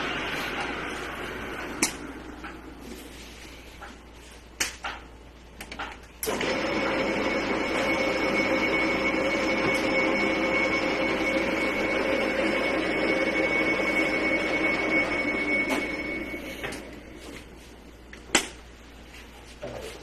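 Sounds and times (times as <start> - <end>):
lathe running with high whine: 0.0 - 3.4, 6.3 - 17.6.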